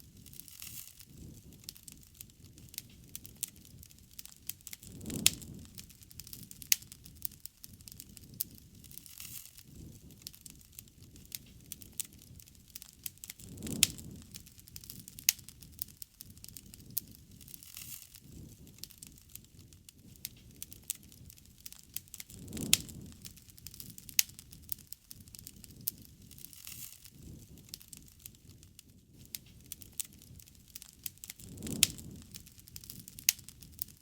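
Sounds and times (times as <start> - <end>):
campfire crackling and popping: 0.0 - 34.0.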